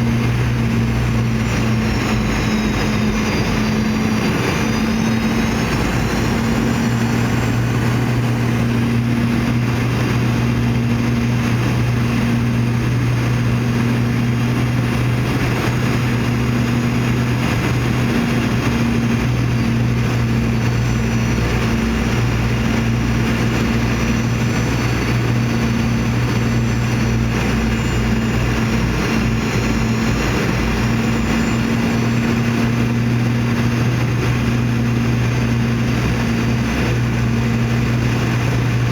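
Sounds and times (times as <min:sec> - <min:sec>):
faint high whine: 0:00.0 - 0:11.4
jet engine drone: 0:00.0 - 0:38.9.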